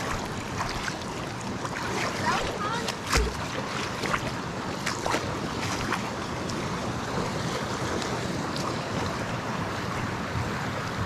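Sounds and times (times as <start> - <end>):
short splashes: 0.0 - 6.1.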